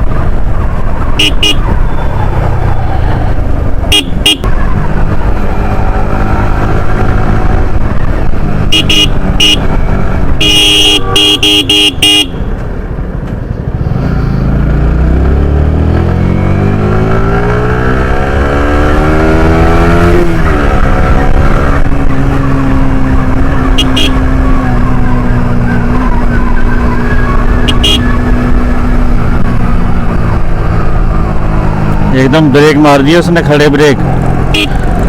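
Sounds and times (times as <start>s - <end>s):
motorcycle engine revving: 0.0s - 12.4s, 13.6s - 35.0s
vehicle horns honking: 1.2s - 2.0s, 3.9s - 4.5s, 8.6s - 12.5s, 23.8s - 24.2s, 27.6s - 28.2s, 34.5s - 34.9s.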